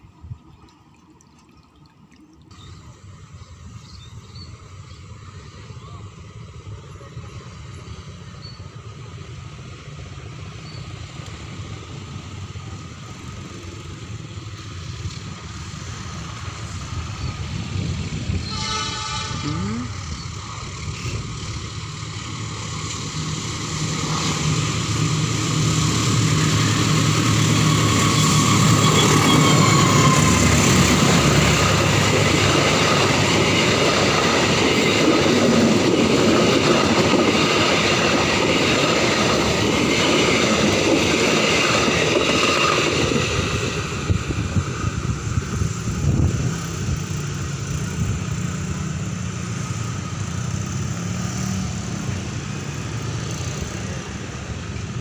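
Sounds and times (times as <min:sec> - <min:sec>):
train passing: 0:02.5 - 0:55.0
train horn blast: 0:18.4 - 0:20.1.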